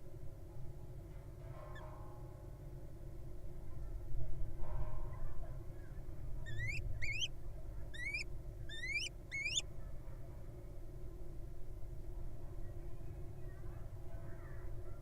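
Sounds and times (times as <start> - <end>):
owl squeaky calls: 6.4 - 7.3, 7.9 - 9.6.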